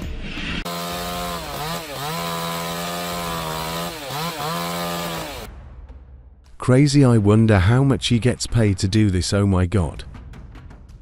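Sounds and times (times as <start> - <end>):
chainsaw running at high revs: 0.7 - 5.5.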